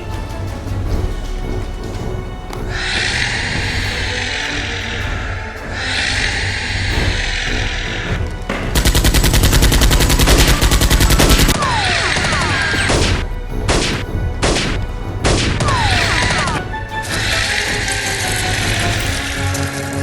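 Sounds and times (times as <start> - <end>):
background music: 0.0 - 20.0
single gunshots: 12.8 - 15.9.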